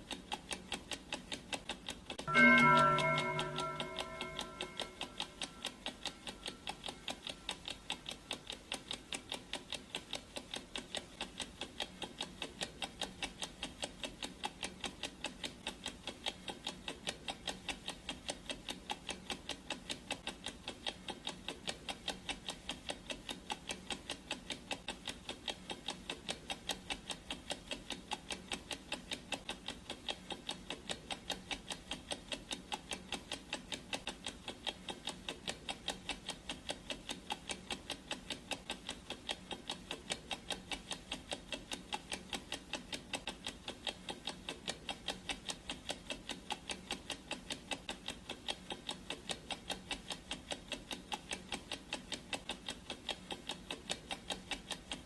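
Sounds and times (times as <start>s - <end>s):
clock ticking: 0.0s - 55.0s
gong ringing: 2.3s - 5.6s.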